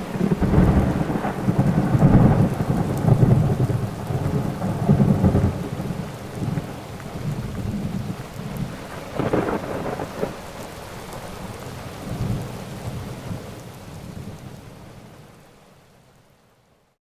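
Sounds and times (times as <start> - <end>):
thunder: 0.0 - 10.4
steady rain: 0.0 - 17.0.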